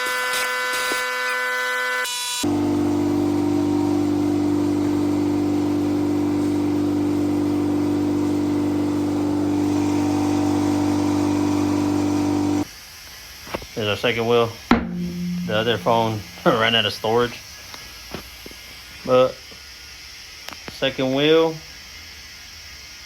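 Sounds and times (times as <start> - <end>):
motor humming: 2.4 - 12.6.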